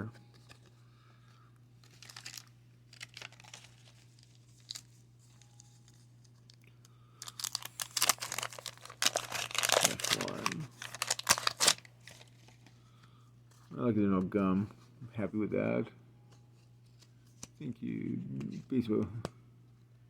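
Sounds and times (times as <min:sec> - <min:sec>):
trading cards rustling: 0:00.0 - 0:06.4, 0:07.2 - 0:12.8
paper wrapper tearing and crinkling: 0:01.8 - 0:06.5, 0:07.2 - 0:12.6.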